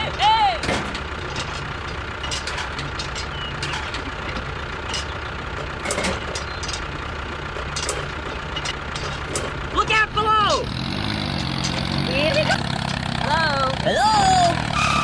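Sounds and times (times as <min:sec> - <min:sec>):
clicks and knocks: 0:00.0 - 0:09.9
tractor engine idling: 0:00.0 - 0:15.0.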